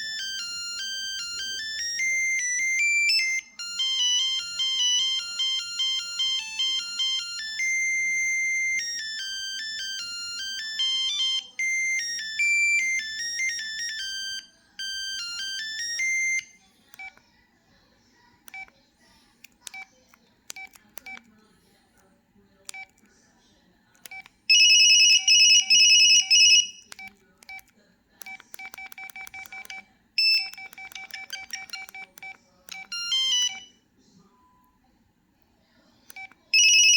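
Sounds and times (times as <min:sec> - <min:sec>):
fast electronic ringtone melody: 0:00.0 - 0:16.6, 0:24.5 - 0:26.8, 0:29.0 - 0:33.7, 0:36.5 - 0:36.9.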